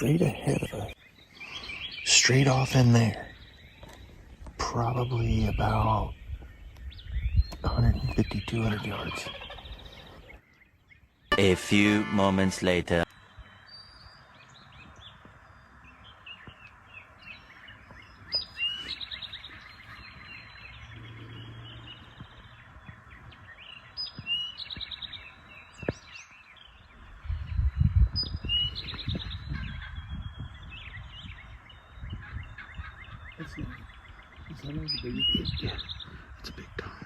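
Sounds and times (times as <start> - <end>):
faint outdoor background noise: 0.0 - 37.0
songbird singing: 0.0 - 37.0
low rumbling: 19.6 - 23.9.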